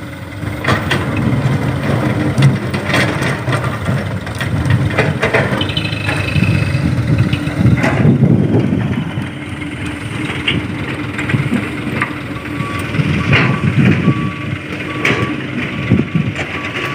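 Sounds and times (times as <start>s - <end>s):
excavator diesel engine under load: 0.0s - 16.9s
reversing alarm beeping: 5.6s - 6.9s, 12.2s - 16.9s.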